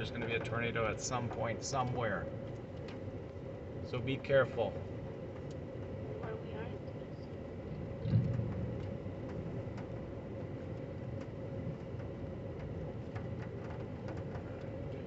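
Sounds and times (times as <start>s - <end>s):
faint steady hum: 0.0s - 15.0s
vehicle running rumble: 0.0s - 15.0s
low thump: 8.0s - 8.8s.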